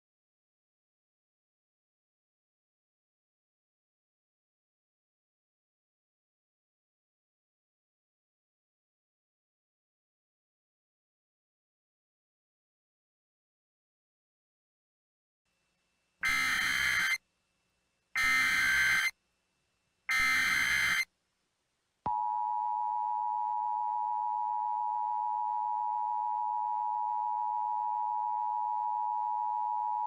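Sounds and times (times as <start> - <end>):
shrill digital data bursts: 20.1 - 21.0.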